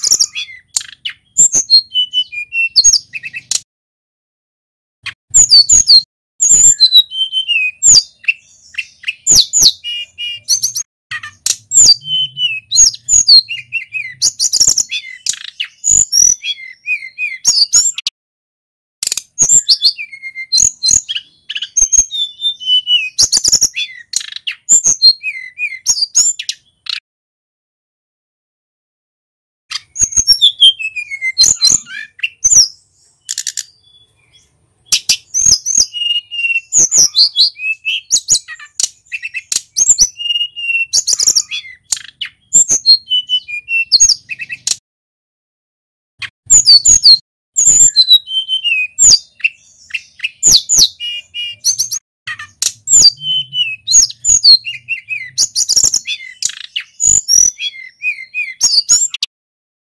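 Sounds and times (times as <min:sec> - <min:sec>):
songbird whistling and chipping: 0:00.0 - 0:03.7, 0:05.0 - 0:18.1, 0:19.0 - 0:27.0, 0:29.7 - 0:44.8, 0:46.2 - 0:59.3.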